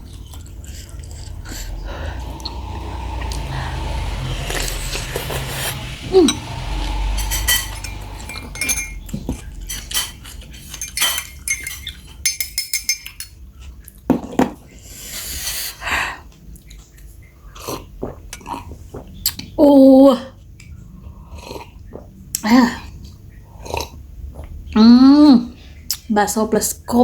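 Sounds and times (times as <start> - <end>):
cutlery clinking against a bowl: 7.2 - 13.4.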